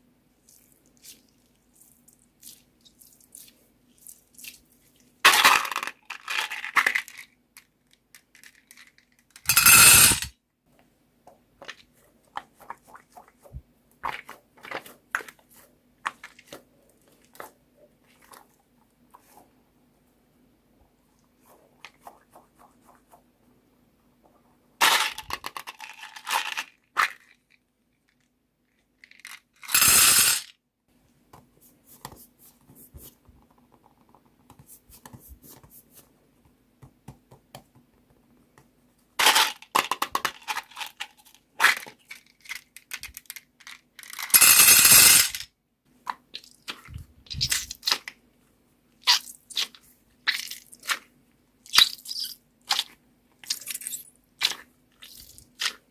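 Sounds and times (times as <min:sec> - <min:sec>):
small beads clattering: 0:08.3 - 0:10.3, 0:29.0 - 0:30.5, 0:39.2 - 0:45.4.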